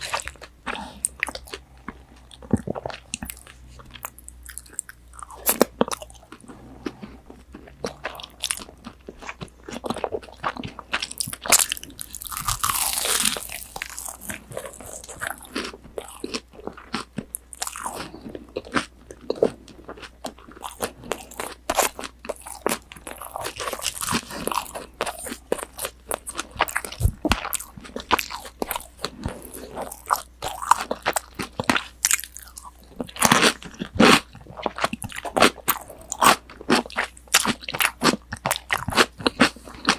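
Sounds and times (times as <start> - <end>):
crunchy chewing: 0.0 - 39.9.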